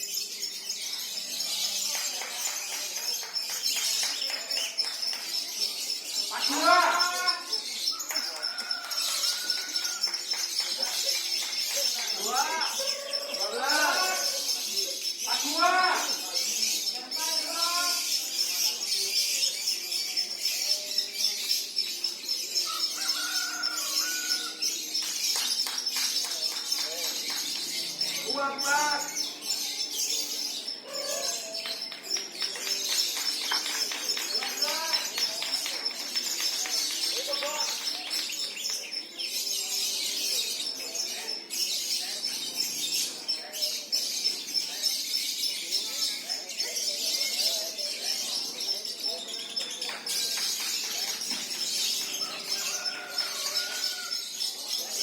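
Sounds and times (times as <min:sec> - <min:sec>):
faint murmur of voices: 0:00.0 - 0:55.0
lovebirds chattering trill: 0:00.0 - 0:55.0.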